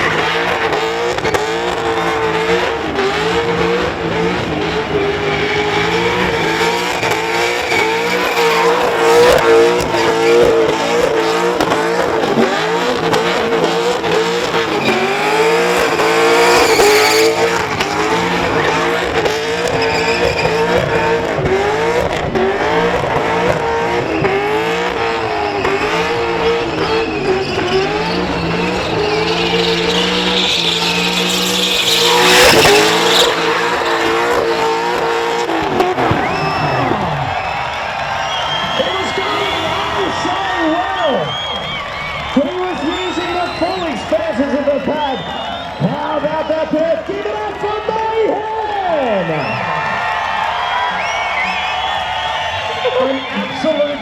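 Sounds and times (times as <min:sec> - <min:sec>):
car engine at high revs: 0:00.0 - 0:48.5
tyres screeching: 0:04.9 - 0:21.3, 0:24.1 - 0:37.5.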